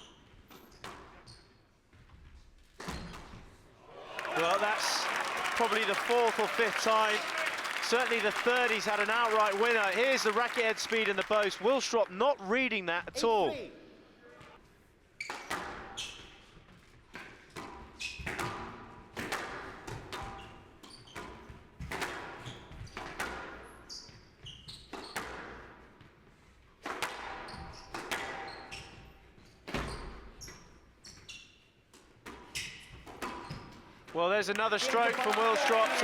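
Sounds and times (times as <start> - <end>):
shoe squeaks: 23.9 - 25.2, 27.5 - 31.8.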